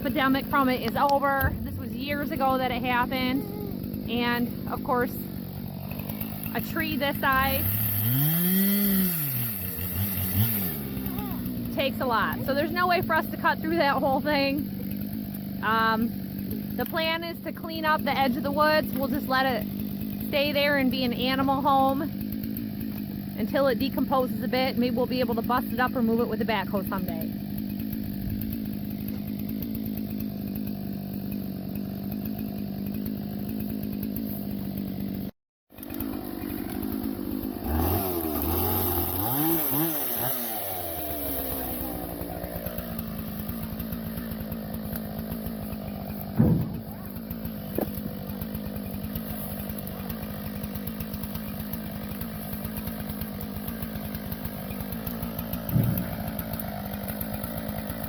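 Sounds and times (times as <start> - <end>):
chainsaw running and revving: 0.0 - 58.0
sharp knocks: 46.3 - 47.0, 55.6 - 56.2.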